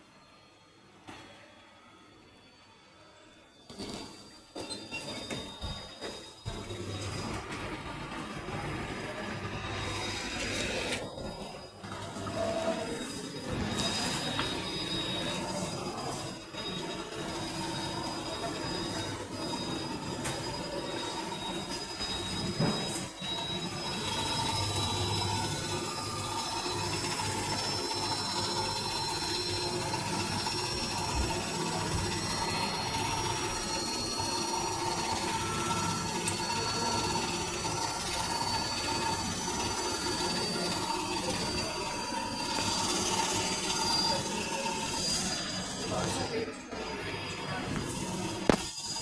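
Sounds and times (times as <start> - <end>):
washing machine whine: 0.0 - 49.0.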